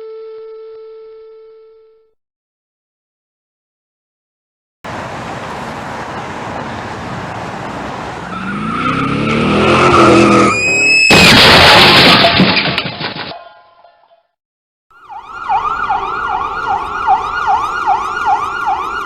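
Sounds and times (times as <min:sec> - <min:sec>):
car engine revving: 0:07.6 - 0:10.6
loud car crash: 0:08.5 - 0:13.4.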